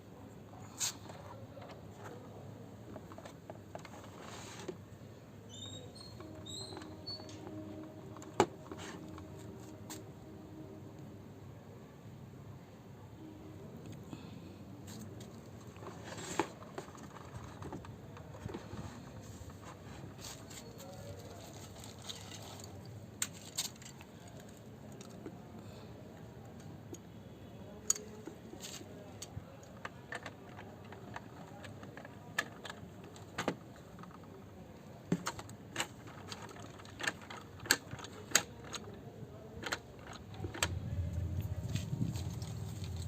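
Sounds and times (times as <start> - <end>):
low hum: 40.5 - 43.0.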